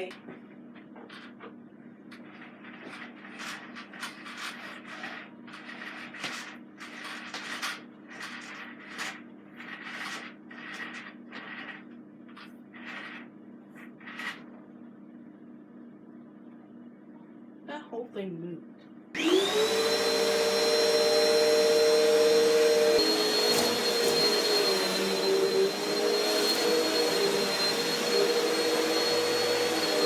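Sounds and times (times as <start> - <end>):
upright vacuum cleaner motor hum: 19.2 - 30.0
vacuum suction and brush noise: 19.2 - 30.0.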